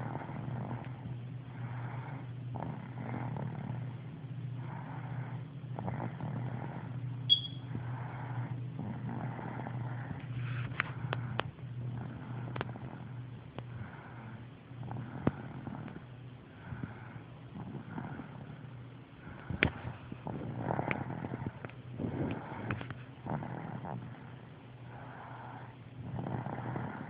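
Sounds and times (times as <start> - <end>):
rhythmic snoring: 0.0 - 27.0
high beep: 7.3 - 7.6.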